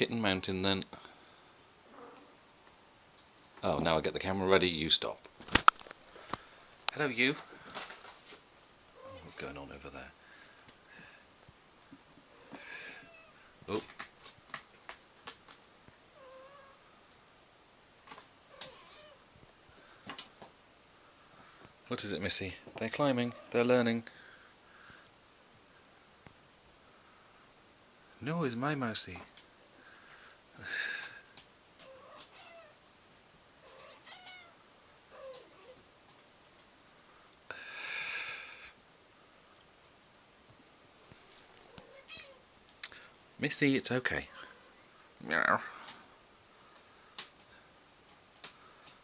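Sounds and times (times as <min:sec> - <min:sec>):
cat meowing faintly: 0:09.0 - 0:09.3, 0:16.2 - 0:16.8, 0:18.5 - 0:19.3, 0:31.8 - 0:32.8, 0:33.6 - 0:35.8, 0:41.7 - 0:42.4
hiss-like noise bursts: 0:30.1 - 0:31.4, 0:37.4 - 0:39.0.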